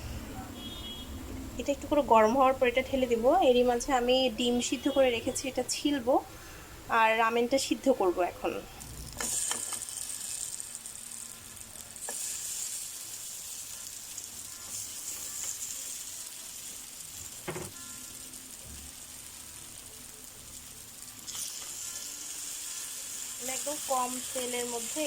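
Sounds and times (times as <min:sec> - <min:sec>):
chicken sizzling in a pan: 0:08.9 - 0:25.0.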